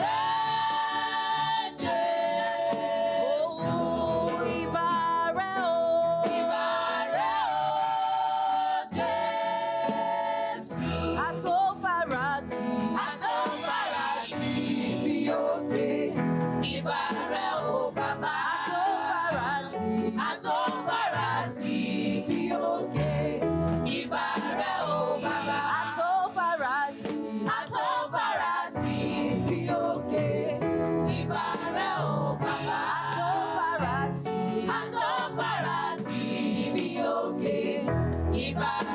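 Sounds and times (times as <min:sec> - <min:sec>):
women's choir singing gospel: 0:00.0 - 0:38.9
drums: 0:09.9 - 0:28.0, 0:38.4 - 0:38.9.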